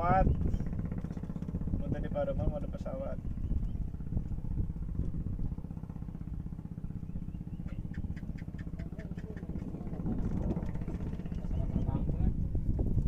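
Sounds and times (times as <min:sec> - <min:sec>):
small engine running: 0:00.0 - 0:13.0.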